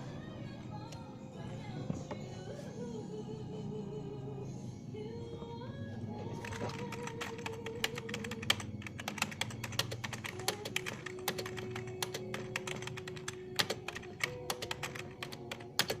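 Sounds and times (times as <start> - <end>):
quiet background music: 0.0 - 16.0
typing on computer keyboard: 6.4 - 16.0.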